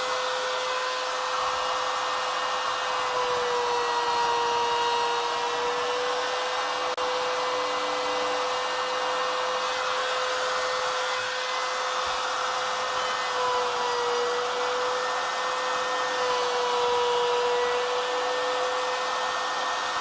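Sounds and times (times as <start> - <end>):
laminate trimmer whining: 0.0 - 20.0.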